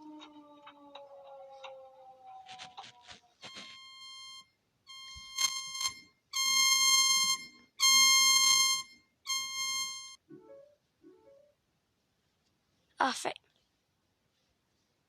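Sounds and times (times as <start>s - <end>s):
buzzing electronic alarm beeps: 3.4s - 10.2s.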